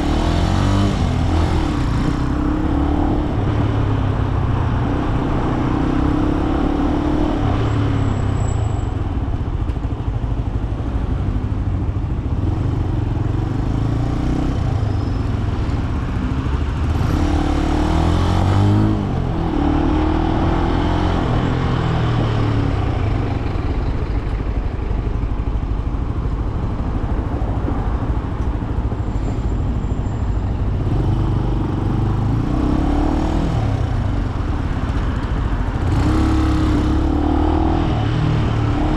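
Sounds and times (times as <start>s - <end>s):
motorcycle engine revving: 0.0s - 4.1s, 16.3s - 25.8s, 30.8s - 38.9s
road noise: 0.0s - 38.9s.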